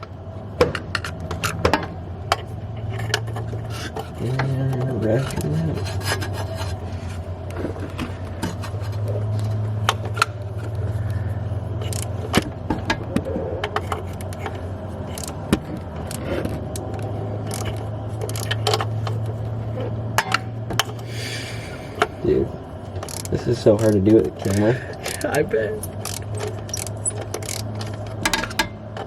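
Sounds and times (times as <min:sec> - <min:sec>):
steady low hum: 0:00.0 - 0:29.0
ratchet wrench clicking: 0:11.8 - 0:12.2, 0:14.2 - 0:15.4, 0:16.0 - 0:19.2, 0:23.0 - 0:28.6.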